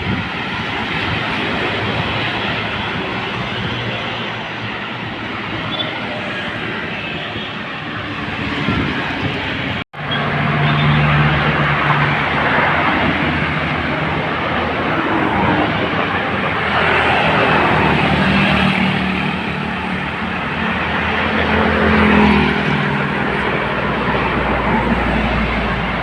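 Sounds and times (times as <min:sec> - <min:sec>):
wind and road noise: 0:00.0 - 0:26.0
vehicle engine humming: 0:10.0 - 0:26.0.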